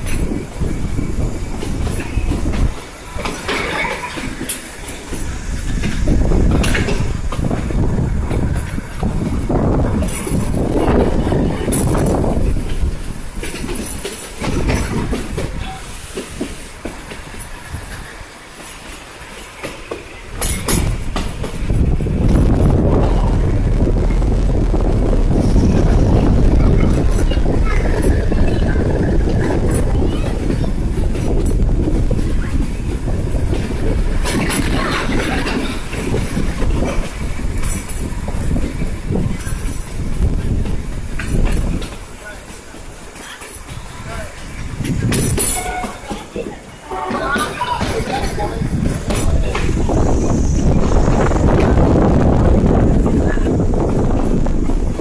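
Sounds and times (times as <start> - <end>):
train rumbling on rails: 0.0 - 55.0.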